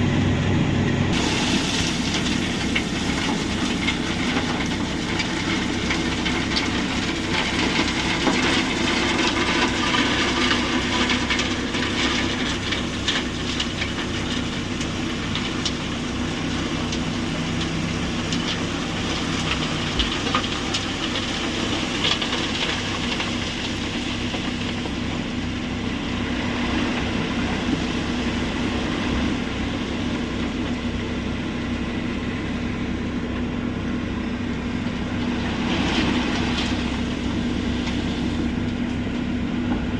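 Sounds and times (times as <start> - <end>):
diesel engine hum: 0.0 - 39.9
machinery clatter: 1.2 - 25.2.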